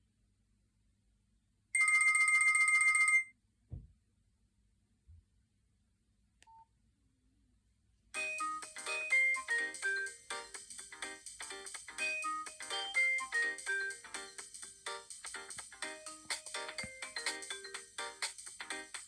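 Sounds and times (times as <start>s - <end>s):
trilling phone ringtone: 1.8s - 3.3s, 8.2s - 10.6s, 12.0s - 14.5s
thump: 3.7s - 4.0s
ringtone melody: 8.2s - 19.0s.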